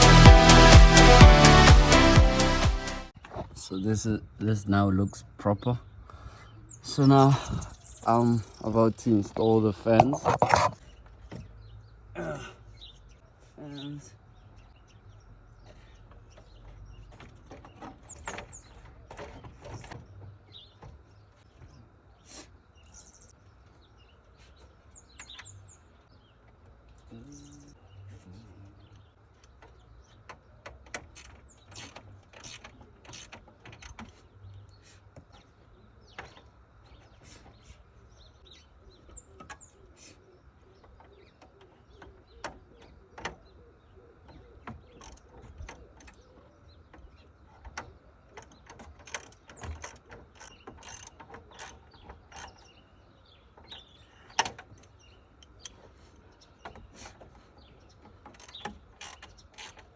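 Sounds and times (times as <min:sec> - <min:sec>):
hand tools clicking and knocking: 0:29.4 - 0:35.4, 0:46.9 - 0:52.7, 0:56.6 - 0:59.9.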